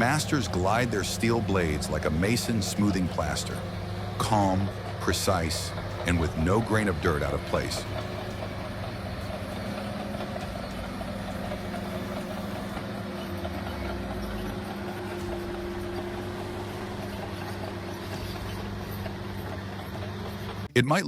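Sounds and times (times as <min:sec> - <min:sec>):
bulldozer engine running: 0:00.0 - 0:21.0.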